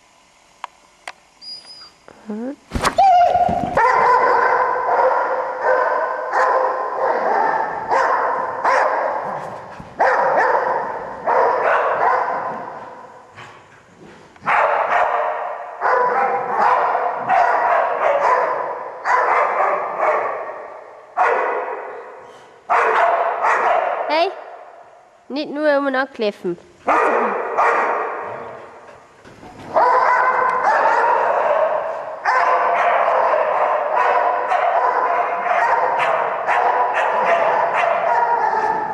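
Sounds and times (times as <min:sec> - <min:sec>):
dog barking with echo: 0:03.8 - 0:09.4, 0:10.0 - 0:12.7, 0:14.5 - 0:24.1, 0:26.9 - 0:28.5, 0:29.8 - 0:38.9.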